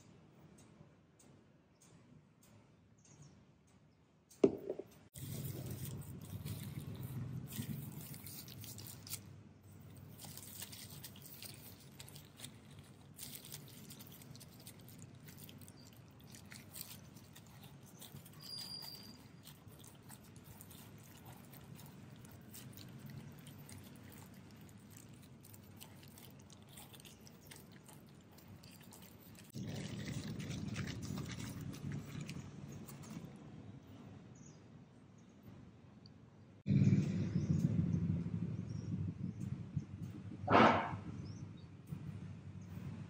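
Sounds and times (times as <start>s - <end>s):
small clicks and crackles: 4.8s - 34.0s
steady low hum: 19.1s - 43.0s.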